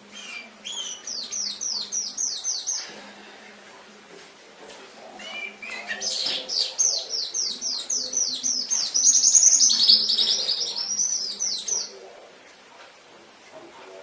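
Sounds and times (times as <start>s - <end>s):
canary singing trills: 0.0s - 2.9s, 5.2s - 12.1s.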